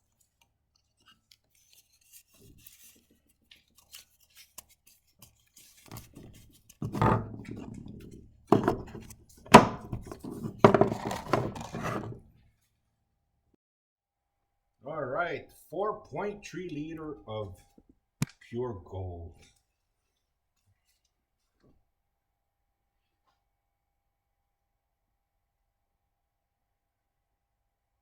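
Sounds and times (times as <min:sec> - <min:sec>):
hard objects rubbing and clattering: 0:05.2 - 0:12.3.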